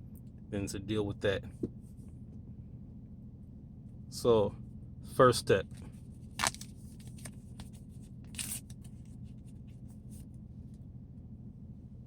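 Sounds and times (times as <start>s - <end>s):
handling rustle: 5.7s - 10.3s.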